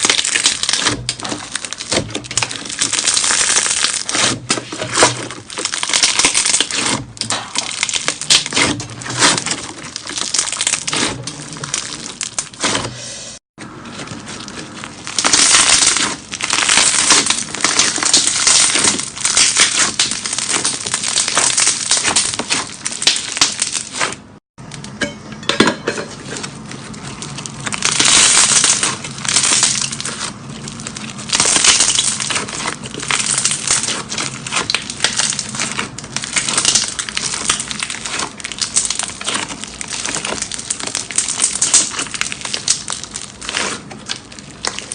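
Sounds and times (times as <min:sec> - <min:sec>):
slime crackling and popping: 0:00.0 - 0:12.9, 0:13.9 - 0:24.9, 0:26.2 - 0:44.9.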